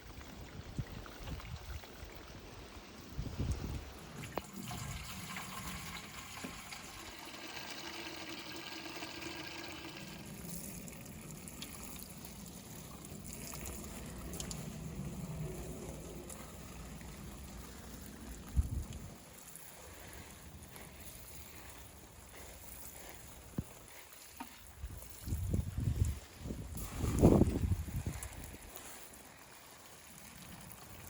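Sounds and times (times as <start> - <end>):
water pouring and trickling: 0.0 - 31.0.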